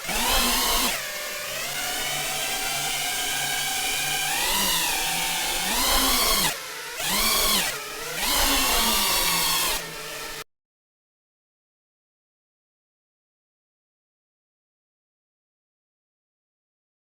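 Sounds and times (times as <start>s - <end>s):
quadcopter motors whining: 0.0s - 10.4s.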